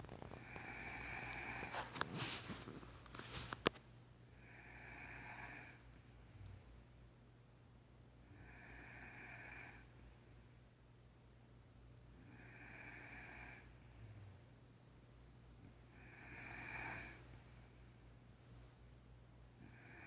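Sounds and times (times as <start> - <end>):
woman snoring: 0.3 - 2.2, 4.4 - 5.8, 8.3 - 9.9, 12.3 - 13.7, 16.0 - 17.3, 19.6 - 20.0
rustling: 1.3 - 3.9.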